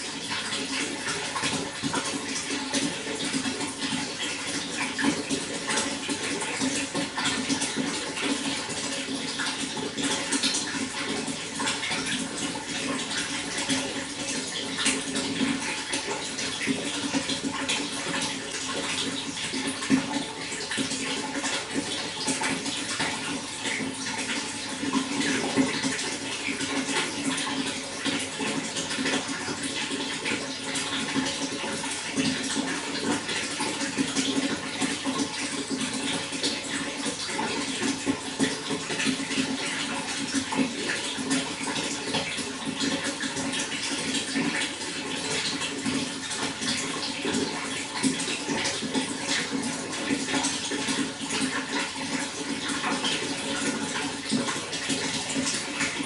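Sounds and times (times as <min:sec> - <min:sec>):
running water splashing: 0:00.0 - 0:56.0.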